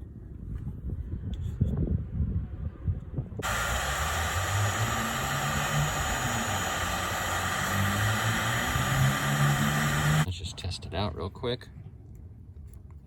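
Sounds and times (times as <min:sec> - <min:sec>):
heat gun blowing hiss: 0:03.4 - 0:10.3.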